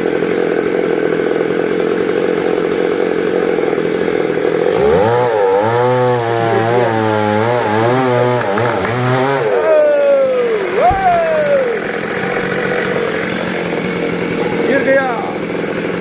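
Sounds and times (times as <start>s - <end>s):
chainsaw cutting through tree: 0.0s - 16.0s.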